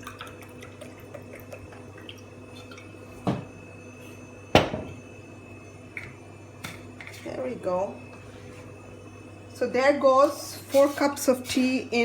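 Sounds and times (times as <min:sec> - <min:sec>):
cup clunking against a pan: 0:03.2 - 0:03.5, 0:04.6 - 0:05.0.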